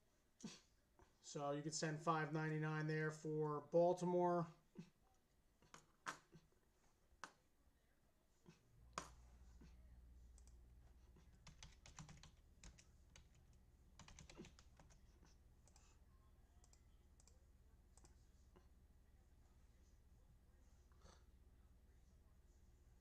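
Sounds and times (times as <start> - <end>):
low steady hum: 7.6 - 23.0
computer keyboard typing: 11.3 - 15.0.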